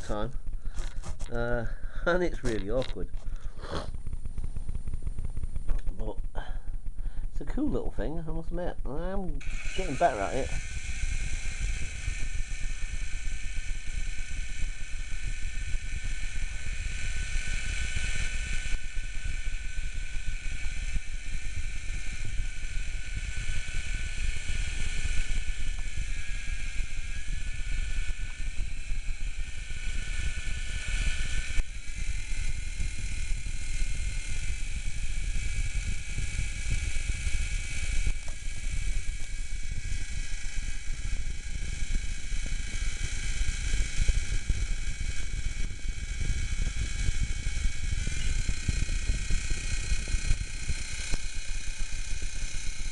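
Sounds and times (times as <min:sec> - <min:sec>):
toy helicopter motor whirring: 0:00.0 - 0:52.9.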